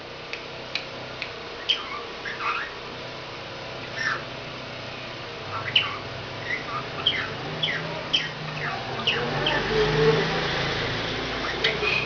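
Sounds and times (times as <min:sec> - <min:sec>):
parrot chirping: 0:01.6 - 0:02.8, 0:03.8 - 0:04.3, 0:05.4 - 0:12.0.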